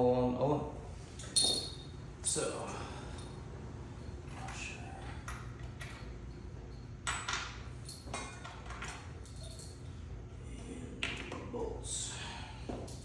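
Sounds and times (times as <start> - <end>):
steady low hum: 0.0 - 13.0
metal brackets clinking: 1.1 - 2.0, 4.3 - 10.1.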